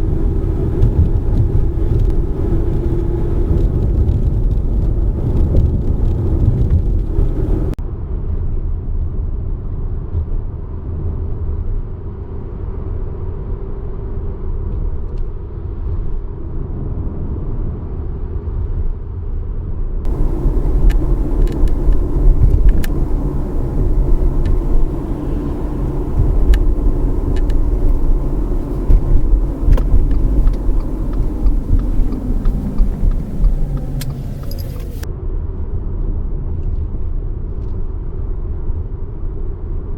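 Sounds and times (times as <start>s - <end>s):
car road rumble inside cabin: 0.0s - 7.8s, 20.1s - 35.1s
sharp clicks and ticks: 0.0s - 7.8s, 20.1s - 35.1s.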